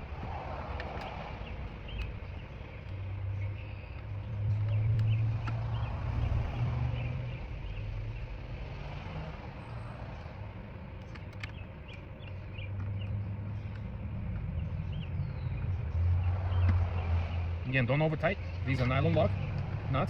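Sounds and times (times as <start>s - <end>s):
small birds chirping: 0.0s - 20.0s
steady low rumble: 0.0s - 20.0s
light clicks: 11.0s - 14.5s.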